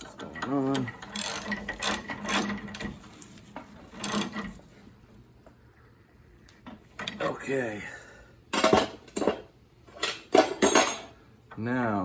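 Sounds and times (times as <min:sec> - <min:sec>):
wrench ratcheting: 0:00.0 - 0:03.0.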